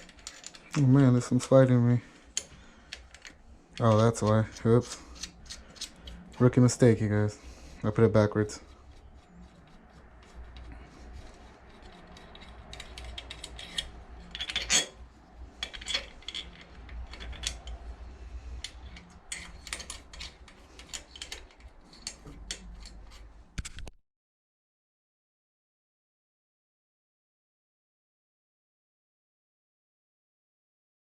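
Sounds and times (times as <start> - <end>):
metal tools clinking: 0.0 - 6.4, 10.2 - 23.3.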